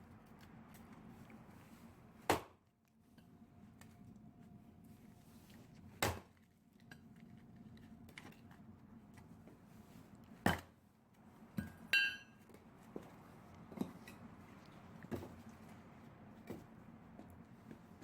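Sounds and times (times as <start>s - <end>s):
metallic ring: 11.6s - 12.4s.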